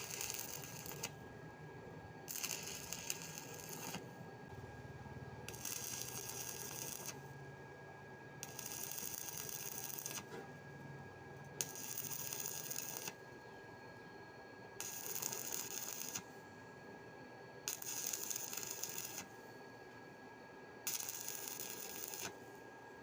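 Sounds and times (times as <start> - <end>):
welding arc crackling: 0.0 - 1.1, 2.3 - 4.0, 5.5 - 7.2, 8.4 - 10.2, 11.6 - 13.1, 14.8 - 16.2, 17.7 - 19.3, 20.9 - 22.3
steady high whine: 0.0 - 23.0.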